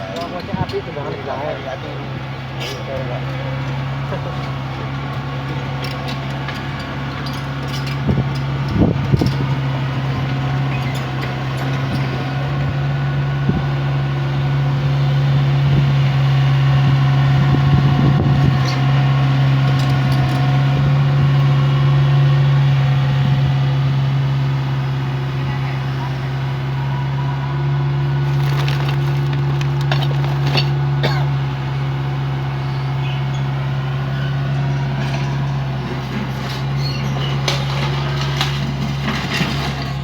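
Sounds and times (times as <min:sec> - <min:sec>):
excavator diesel engine running: 0:00.0 - 0:40.0
demolition knocks and crunches: 0:28.2 - 0:30.9, 0:35.0 - 0:40.0.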